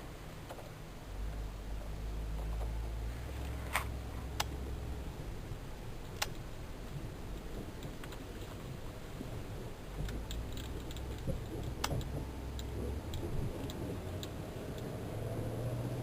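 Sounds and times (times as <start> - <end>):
car engine and road rumble: 0.0 - 16.0
light clicks and ticks: 3.4 - 4.7, 6.0 - 15.0.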